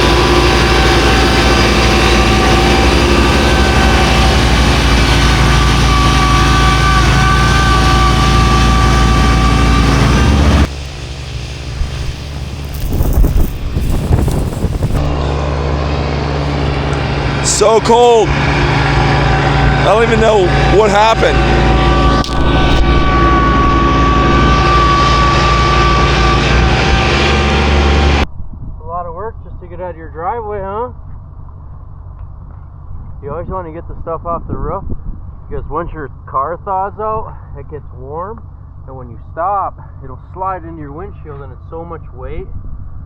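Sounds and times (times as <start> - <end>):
wind noise: 0.0 - 17.4, 18.3 - 30.1, 32.8 - 36.0, 42.4 - 43.0
tractor engine running: 0.0 - 28.2
snowblower high whine: 0.0 - 28.3.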